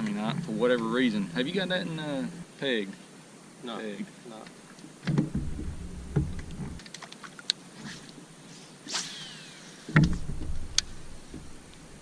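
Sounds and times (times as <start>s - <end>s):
low knocks: 5.0s - 6.8s, 9.9s - 11.6s
rod cast swish and whine: 7.8s - 9.9s.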